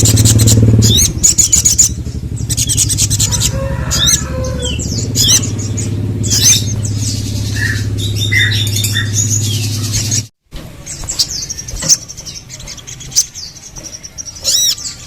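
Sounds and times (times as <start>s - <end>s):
steady low hum: 0.0s - 14.1s
bird chirping and trilling: 0.0s - 15.0s.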